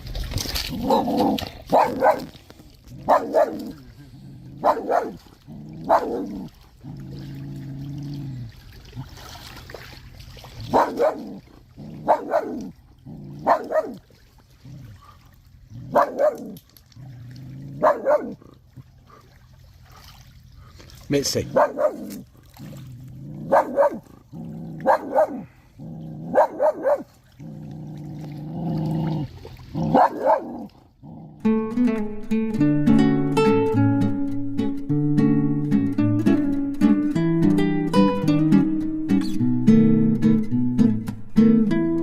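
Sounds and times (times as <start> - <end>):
dog barking: 0.8 - 2.3, 3.0 - 3.7, 4.6 - 5.2, 5.8 - 6.3, 10.7 - 11.4, 12.0 - 12.7, 13.4 - 14.0, 15.9 - 16.6, 17.8 - 18.4, 21.5 - 22.2, 23.4 - 24.0, 24.8 - 25.5, 26.3 - 27.1, 29.8 - 30.7.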